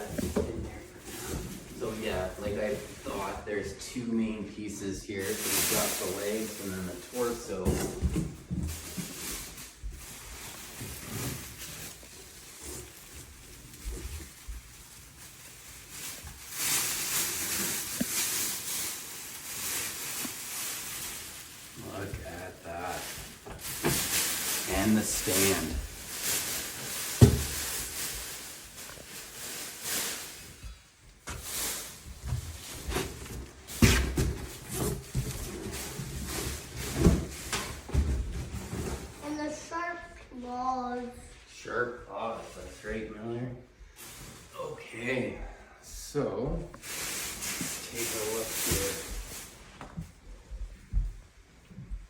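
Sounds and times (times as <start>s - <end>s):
packing material rustling: 5.2s - 30.7s, 46.8s - 50.2s.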